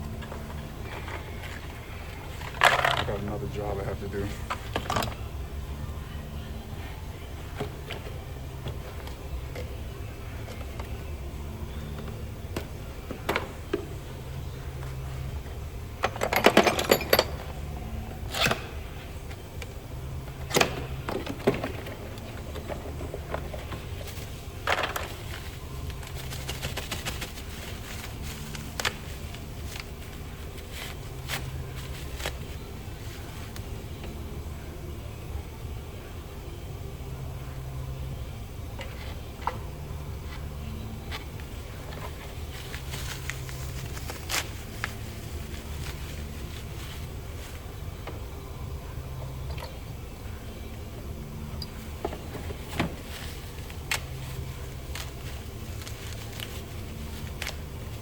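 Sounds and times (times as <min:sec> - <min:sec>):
steady low hum: 0:00.0 - 0:58.0
hand tools clinking: 0:16.2 - 0:17.5.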